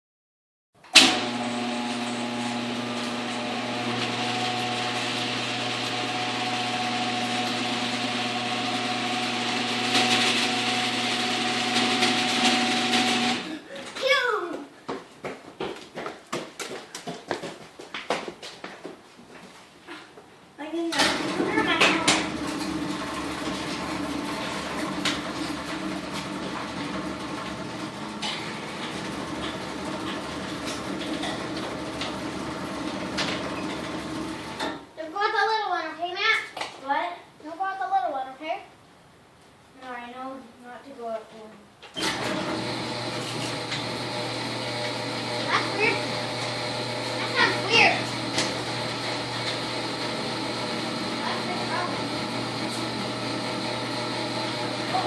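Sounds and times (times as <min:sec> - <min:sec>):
garage door opener motor: 0:00.9 - 0:13.6, 0:20.9 - 0:34.9, 0:41.9 - 0:55.0.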